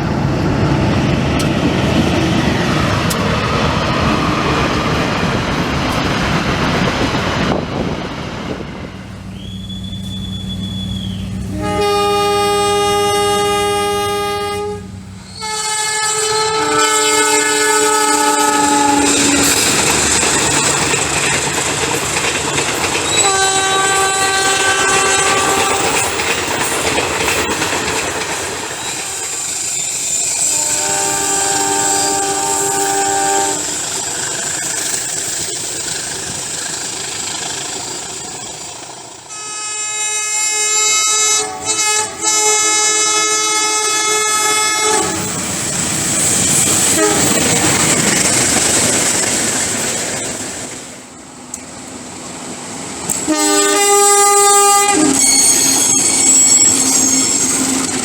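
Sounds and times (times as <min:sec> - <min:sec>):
running train noise: 0:00.0 - 0:58.0
train horn chord blasts: 0:09.4 - 0:19.6, 0:23.2 - 0:26.1, 0:30.5 - 0:33.8, 0:39.3 - 0:45.4, 0:47.0 - 0:47.4, 0:53.2 - 0:56.0.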